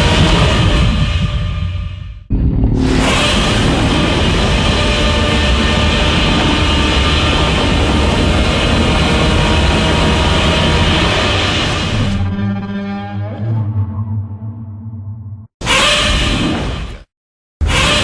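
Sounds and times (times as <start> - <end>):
loud dense monster roar effect: 2.3 - 14.4.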